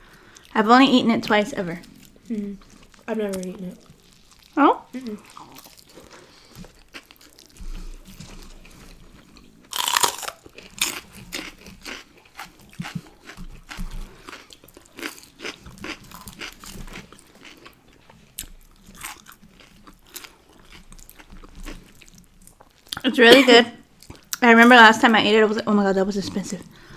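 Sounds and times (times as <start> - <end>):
person chewing crunchy food: 1.8 - 23.0, 23.9 - 24.4.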